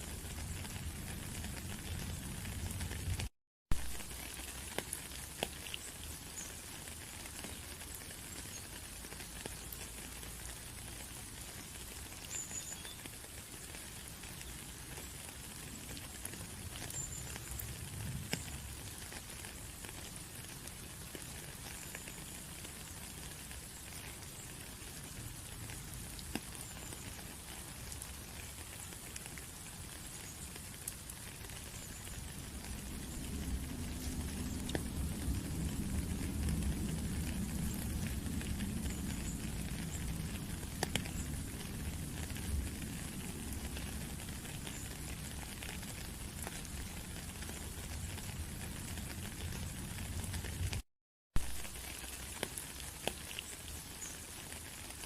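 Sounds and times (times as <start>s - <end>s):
rain falling steadily: 0.0s - 55.0s.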